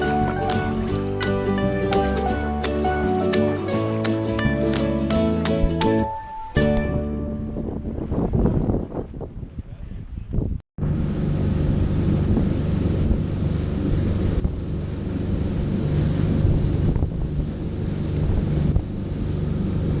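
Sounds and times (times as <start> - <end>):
motorboat engine running: 0.0 - 6.0, 10.8 - 20.0
water rushing past hull: 0.0 - 6.6
wind buffeting microphone: 6.8 - 20.0.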